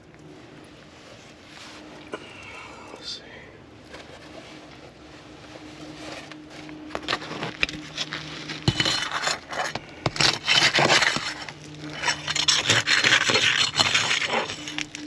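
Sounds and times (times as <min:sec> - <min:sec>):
scraping: 0:03.8 - 0:15.0
shingle seal crackling and tearing: 0:06.8 - 0:15.0.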